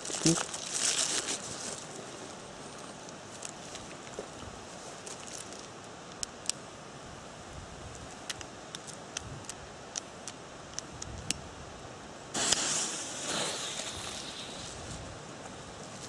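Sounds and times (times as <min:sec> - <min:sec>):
background hiss: 0:00.0 - 0:16.0
small sharp clicks: 0:08.1 - 0:11.4
burst of rustling: 0:12.4 - 0:15.1.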